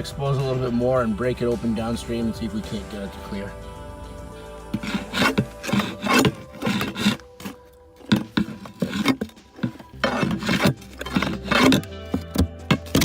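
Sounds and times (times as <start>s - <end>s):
shovel scraping and digging soil: 4.7s - 13.0s.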